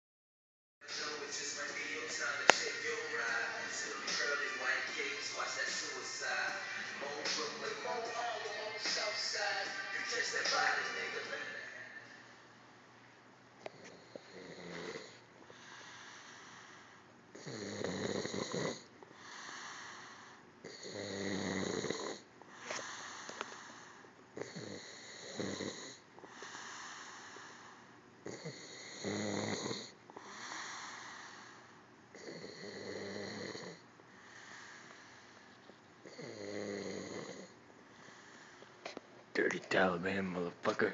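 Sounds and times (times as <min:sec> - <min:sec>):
person snoring: 0:13.7 - 0:16.6, 0:17.4 - 0:35.1, 0:36.0 - 0:38.6.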